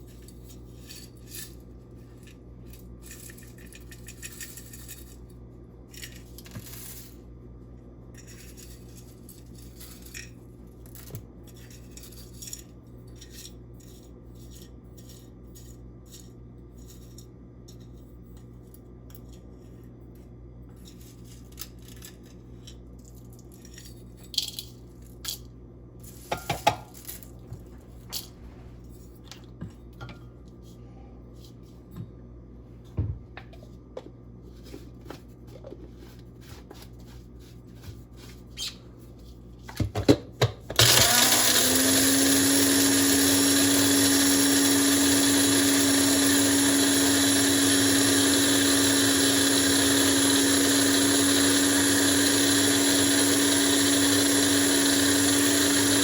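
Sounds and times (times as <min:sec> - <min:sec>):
blender motor whirring: 0:40.8 - 0:56.0.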